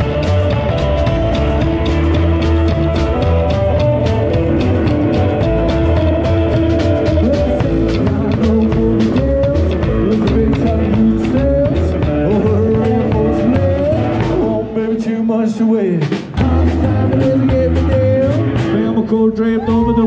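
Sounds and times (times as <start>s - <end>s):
lead guitar bending notes: 0.0s - 14.8s
live rock band playing: 0.0s - 20.0s.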